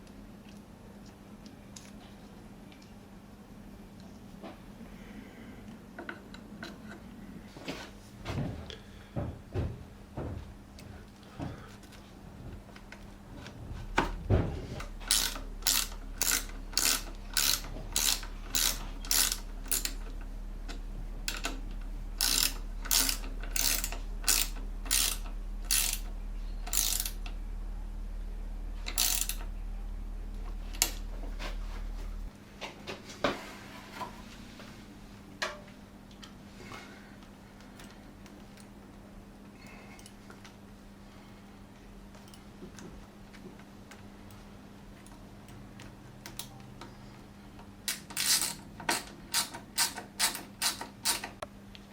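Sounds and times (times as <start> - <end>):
steady low hum: 0.0 - 51.9
ratchet spanner clicking: 15.0 - 21.6, 22.2 - 27.3, 28.8 - 29.5, 47.9 - 51.4.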